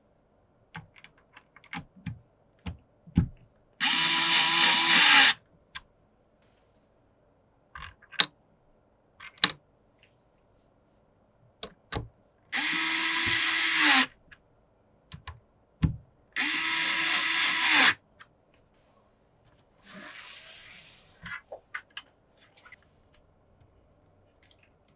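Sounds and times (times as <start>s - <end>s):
electric screwdriver driving screws: 3.8s - 5.4s, 12.6s - 14.1s, 16.4s - 18.0s
hardware clicks and taps: 9.2s - 9.6s, 11.6s - 12.1s, 15.1s - 16.0s.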